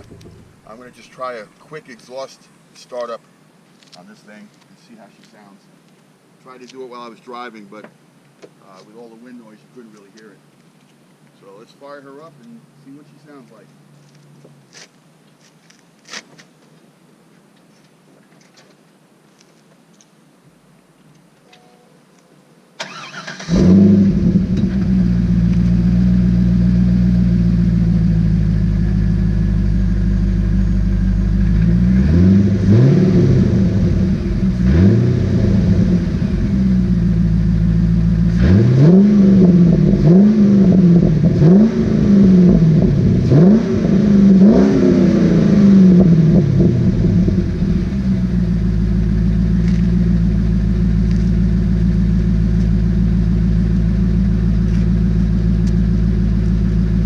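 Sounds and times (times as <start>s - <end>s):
car engine idling: 0.0s - 1.3s, 22.8s - 57.0s
engine revving in throttle blips: 22.9s - 57.0s.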